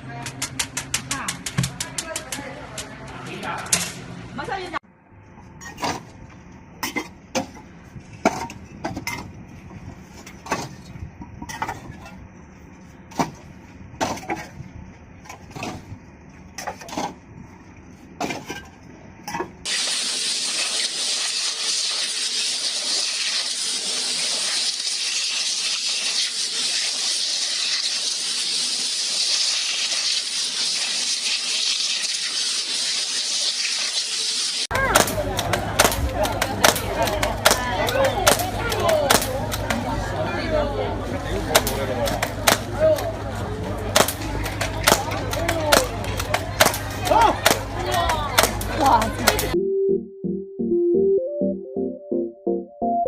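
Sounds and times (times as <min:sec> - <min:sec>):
steady loud hiss: 0:19.7 - 0:49.6.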